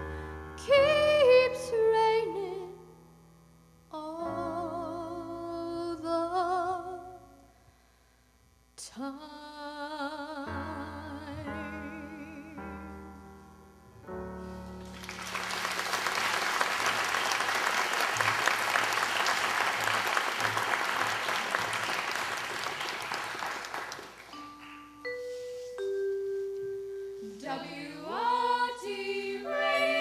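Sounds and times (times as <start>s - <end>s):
audience applause: 14.8s - 24.4s
bell-like tones: 24.3s - 27.4s.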